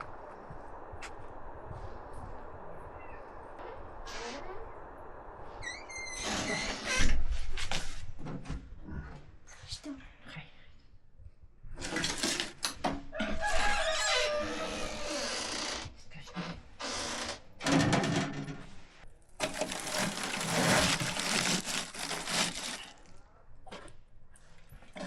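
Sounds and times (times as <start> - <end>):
rooster crowing: 13.1 - 15.2
scraping rustling noise: 18.7 - 23.2.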